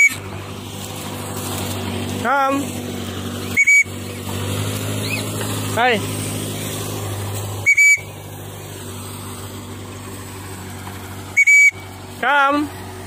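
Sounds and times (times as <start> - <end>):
high whistle double note: 3.6 - 3.9, 7.6 - 8.1, 11.4 - 11.8.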